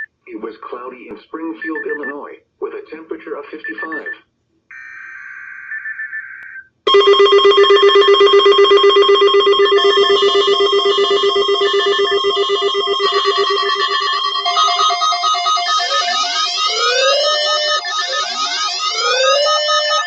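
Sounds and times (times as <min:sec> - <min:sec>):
high beeping notes: 0:06.9 - 0:20.0
pulsing bell-like alert tone: 0:06.9 - 0:20.0.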